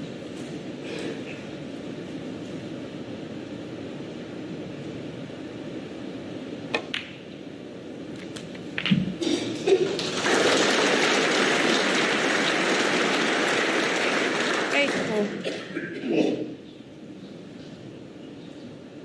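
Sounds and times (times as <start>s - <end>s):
snooker balls clicking: 8.1s - 9.6s
crowd applauding: 9.6s - 15.4s.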